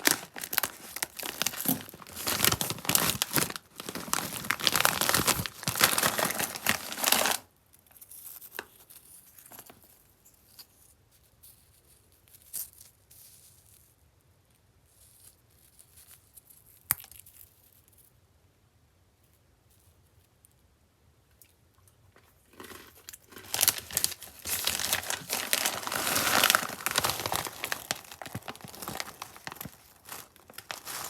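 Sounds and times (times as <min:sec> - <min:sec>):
candy wrapper crinkling: 0:00.0 - 0:10.0, 0:22.4 - 0:31.0.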